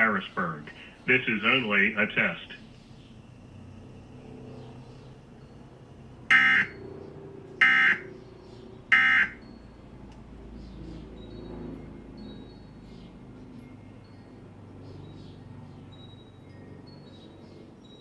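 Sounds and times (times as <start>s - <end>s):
digital data tone bursts: 6.3s - 6.7s, 8.9s - 9.4s.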